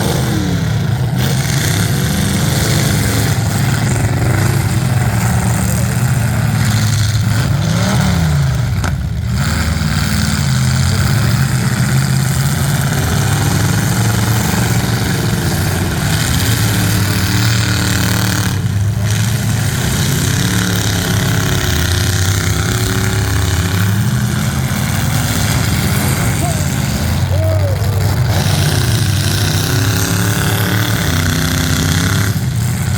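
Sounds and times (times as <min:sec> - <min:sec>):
car engines revving: 0:00.0 - 0:32.9.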